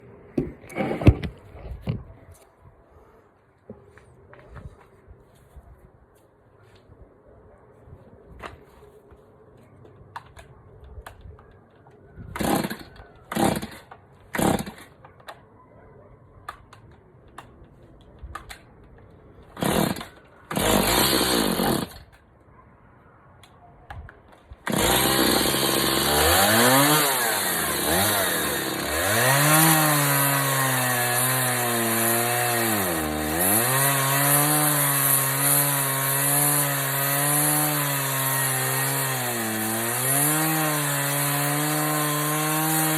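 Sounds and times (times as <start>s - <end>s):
chainsaw starter pulls: 12.3s - 14.9s, 19.5s - 22.2s, 24.6s - 31.3s
chainsaw engine revving: 12.4s - 14.8s, 19.6s - 22.0s, 24.7s - 42.9s.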